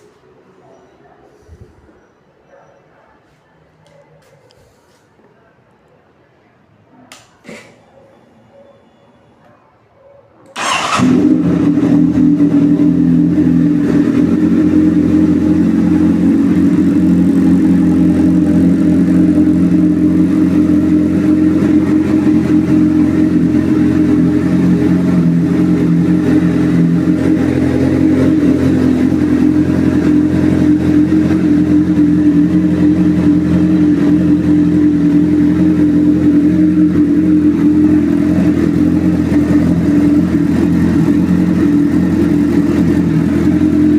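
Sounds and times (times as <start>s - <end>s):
motorcycle engine idling: 10.6s - 43.9s.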